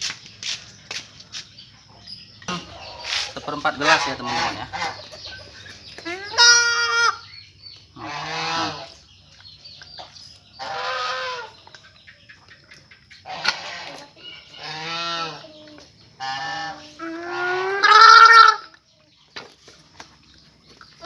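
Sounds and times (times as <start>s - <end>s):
goat bleating: 6.0s - 7.2s, 17.2s - 18.7s.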